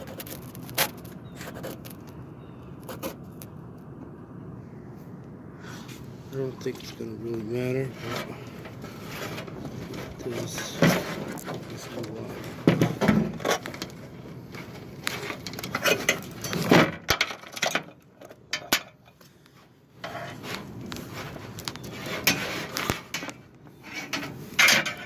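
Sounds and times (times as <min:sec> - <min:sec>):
scraping and rubbing: 0:00.0 - 0:02.2, 0:02.8 - 0:03.6, 0:07.3 - 0:18.9, 0:19.6 - 0:25.0.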